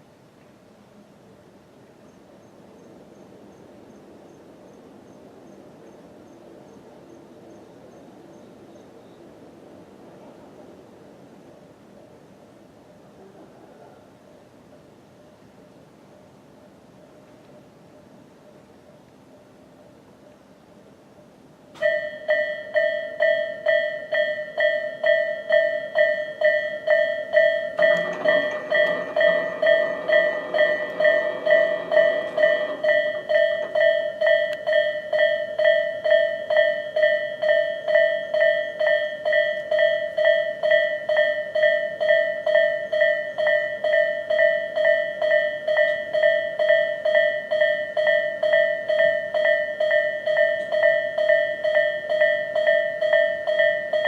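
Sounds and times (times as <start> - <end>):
railroad crossing bell dinging: 21.7 - 54.0
low rumbling: 27.8 - 33.9.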